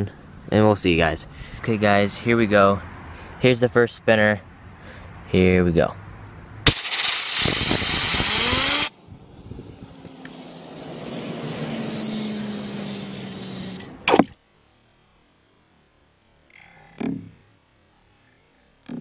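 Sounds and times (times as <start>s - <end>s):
spinner whirring: 6.7s - 14.1s
compressed air blast: 6.7s - 14.2s
fidget spinner whine: 6.7s - 15.7s.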